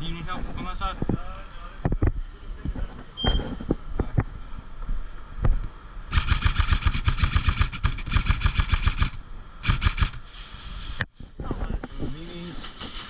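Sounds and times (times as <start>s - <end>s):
airsoft gun automatic fire: 6.1s - 10.3s.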